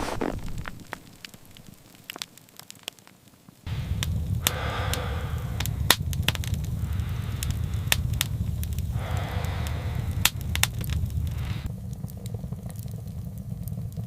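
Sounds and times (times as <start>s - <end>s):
soft hiss: 0.0s - 11.7s
fire popping and snapping: 0.0s - 14.0s
wood fire crackling: 0.0s - 14.0s
low rumble: 3.7s - 14.0s.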